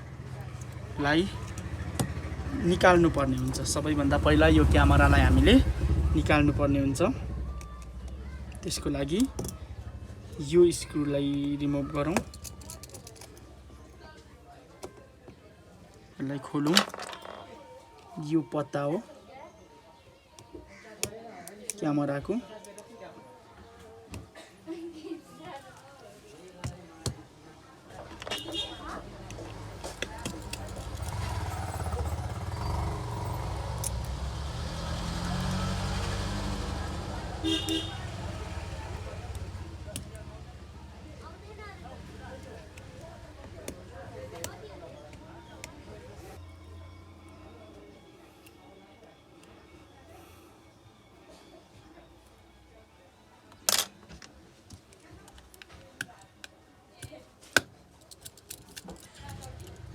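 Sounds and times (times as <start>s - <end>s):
vehicle engine rumble passing: 0.0s - 11.0s, 28.8s - 47.5s
small tools clicking and tapping: 12.0s - 13.5s, 16.6s - 17.6s, 29.2s - 31.3s, 53.5s - 59.9s.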